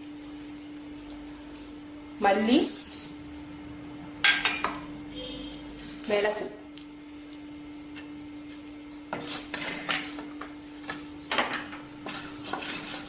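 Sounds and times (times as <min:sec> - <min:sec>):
utensil stirring seeds in a pan: 0:09.1 - 0:11.3, 0:12.0 - 0:13.0.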